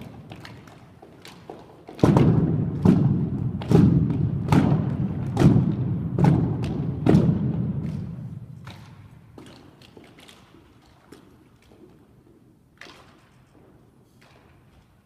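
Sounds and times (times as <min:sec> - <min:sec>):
heavy echoing thuds on floor: 0:01.9 - 0:09.4.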